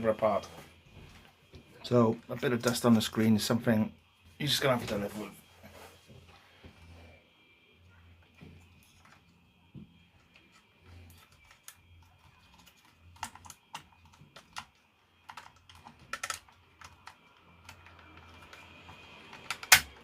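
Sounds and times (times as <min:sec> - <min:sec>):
faint steady hum: 0:00.0 - 0:20.0
small parts clicking: 0:10.4 - 0:20.0.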